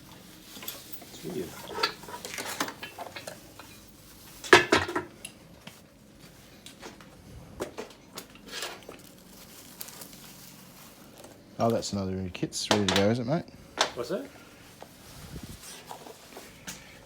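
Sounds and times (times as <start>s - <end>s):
metal parts and tools clattering: 0.6s - 5.1s.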